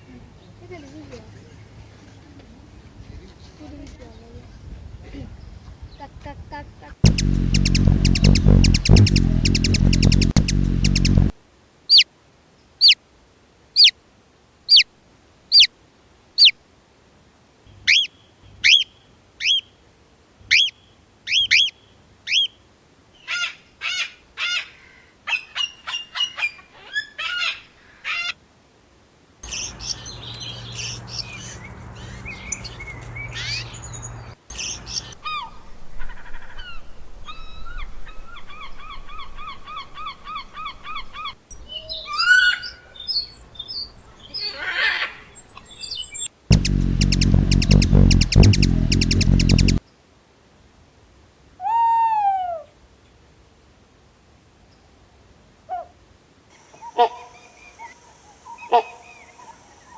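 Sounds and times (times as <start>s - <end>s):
bird chirps and twitters: 7.0s - 11.3s, 45.2s - 49.8s
bird trill: 7.0s - 11.3s, 45.2s - 49.8s.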